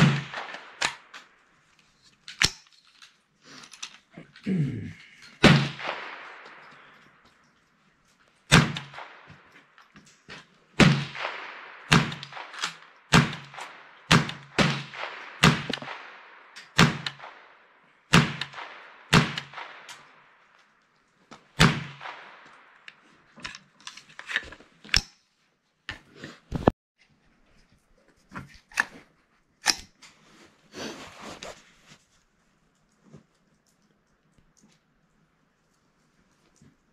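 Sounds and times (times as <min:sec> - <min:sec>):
rifle shots with echo: 0:00.0 - 0:01.4, 0:05.3 - 0:07.3, 0:08.5 - 0:09.8, 0:10.8 - 0:20.4, 0:21.5 - 0:22.8.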